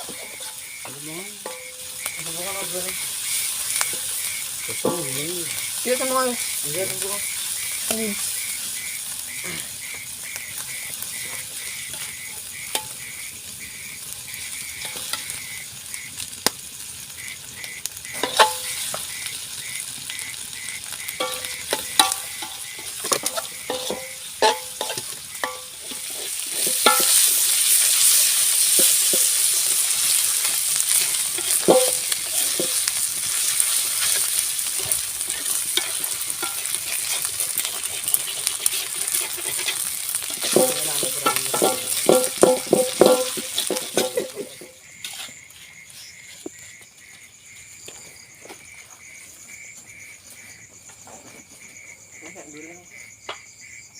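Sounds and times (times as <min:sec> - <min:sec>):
food sizzling in hot oil: 0:00.0 - 0:48.3
metal cookware clinking: 0:01.4 - 0:02.7, 0:18.1 - 0:19.0, 0:21.2 - 0:44.8.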